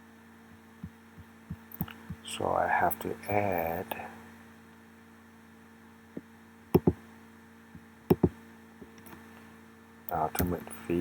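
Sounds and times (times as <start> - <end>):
faint electrical hum: 0.0 - 11.0
computer mouse clicks: 6.7 - 7.0, 8.1 - 9.2, 10.1 - 10.6.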